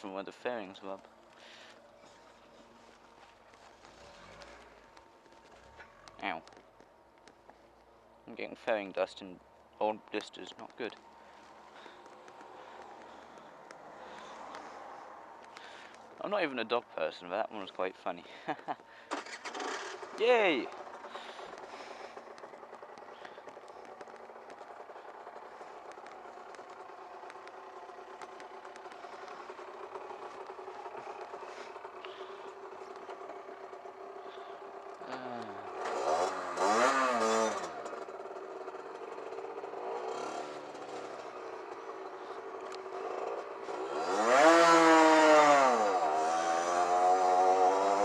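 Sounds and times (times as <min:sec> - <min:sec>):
two-stroke motorcycle engine revving: 0:02.8 - 0:05.0, 0:10.6 - 0:16.0, 0:18.5 - 0:48.0.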